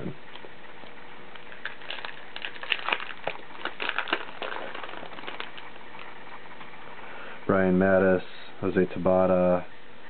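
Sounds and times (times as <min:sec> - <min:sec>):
foil wrapper crinkling: 0:01.3 - 0:06.1.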